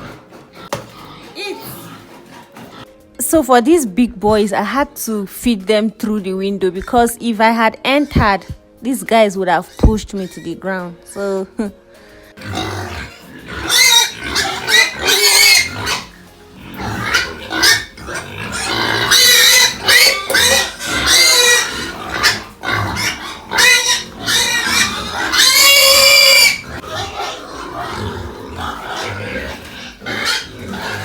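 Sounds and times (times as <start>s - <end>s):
pigs squealing: 0.0s - 3.0s, 9.6s - 11.3s, 12.3s - 31.0s
pigs grunting: 0.0s - 3.1s, 12.2s - 31.0s.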